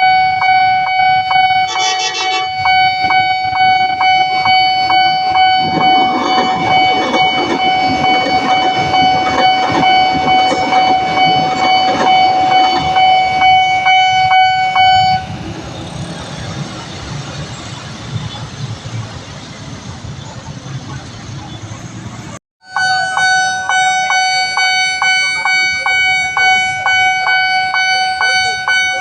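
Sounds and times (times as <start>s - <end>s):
level-crossing alarm tone: 0.0s - 15.5s, 22.6s - 29.0s
road traffic noise: 0.0s - 29.0s
train rumbling and clattering: 0.4s - 22.4s.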